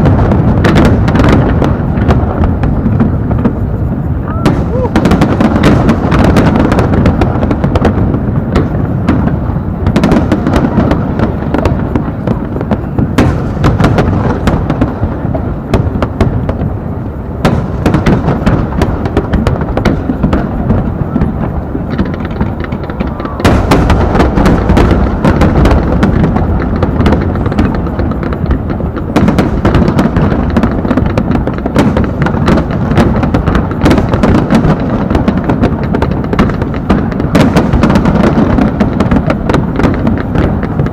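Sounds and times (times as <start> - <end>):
fireworks bursting and crackling: 0.0 - 40.9.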